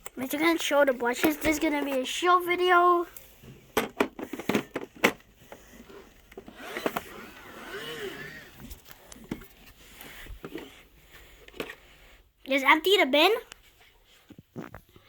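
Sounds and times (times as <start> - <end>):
plastic clicks and knocks: 3.8 - 5.3.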